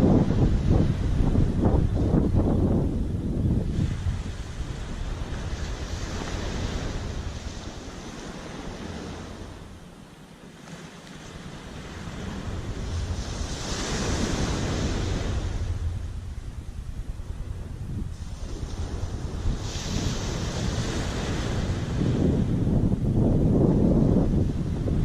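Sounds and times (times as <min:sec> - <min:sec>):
wind rumbling on microphone: 0:00.0 - 0:25.0
surf breaking on beach: 0:10.5 - 0:25.0.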